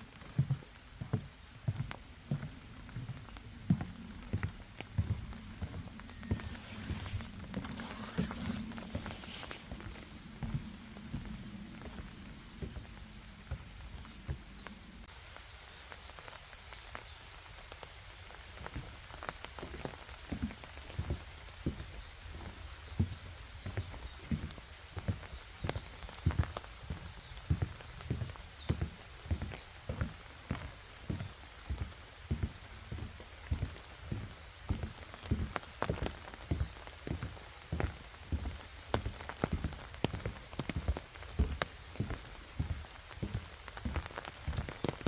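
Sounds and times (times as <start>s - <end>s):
rain drops ticking on leaves: 0.0s - 45.0s
footsteps walking: 0.1s - 14.8s, 18.6s - 45.0s
soft low thumps: 0.3s - 15.0s, 26.2s - 44.8s.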